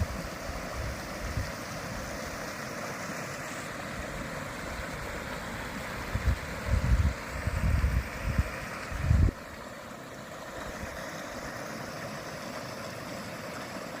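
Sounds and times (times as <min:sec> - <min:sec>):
steady rushing noise: 0:00.0 - 0:09.6
wind buffeting microphone: 0:06.0 - 0:09.4.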